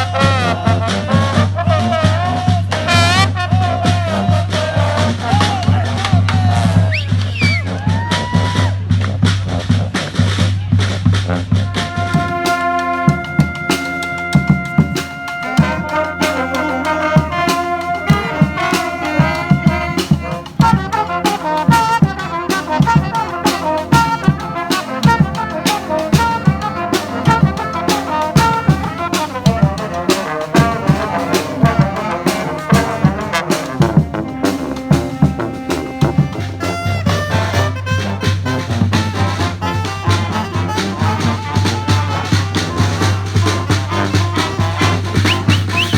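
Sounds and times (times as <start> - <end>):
brass band playing: 11.5 - 45.9
steady drum beat: 11.6 - 45.9.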